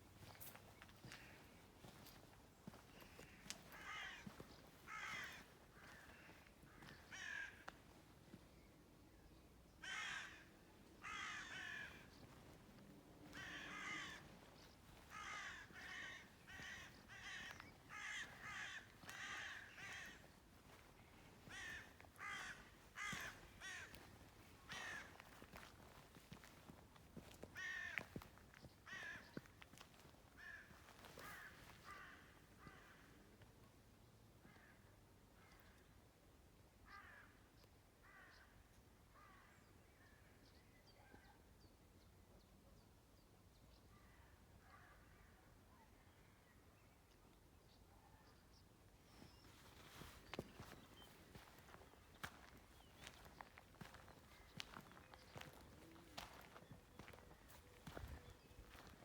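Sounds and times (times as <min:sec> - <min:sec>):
birds calling short calls: 0:13.2 - 0:25.8, 0:49.2 - 0:59.0.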